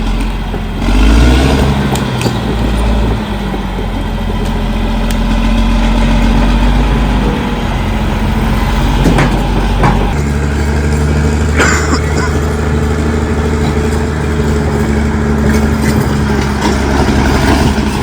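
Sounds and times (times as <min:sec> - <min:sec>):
bulldozer diesel engine running: 0:00.0 - 0:18.0
short knocks: 0:08.9 - 0:10.2.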